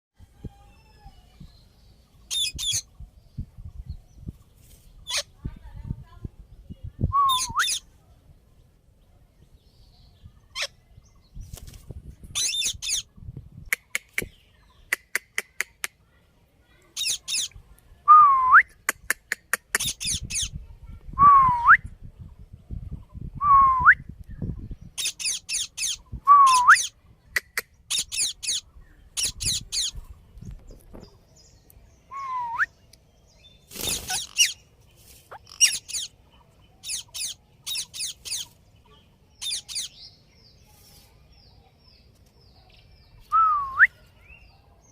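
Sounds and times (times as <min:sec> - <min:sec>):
parakeet screeching: 0:12.4 - 0:13.0, 0:25.0 - 0:26.0, 0:33.9 - 0:34.6, 0:35.4 - 0:36.1, 0:36.8 - 0:38.4, 0:39.4 - 0:39.9.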